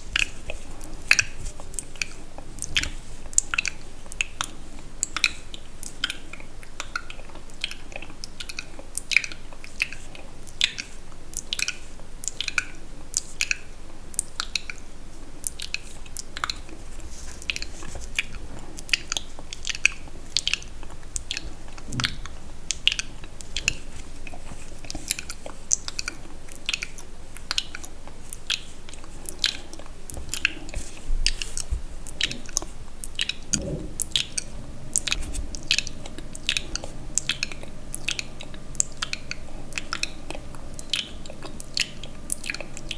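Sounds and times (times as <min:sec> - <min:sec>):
wet mouth clicks and smacks: 0:24.8 - 0:42.9.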